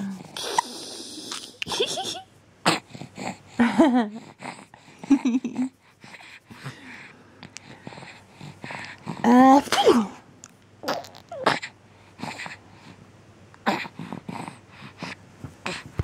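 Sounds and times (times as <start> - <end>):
baby cooing and giggling: 10.8 - 11.7.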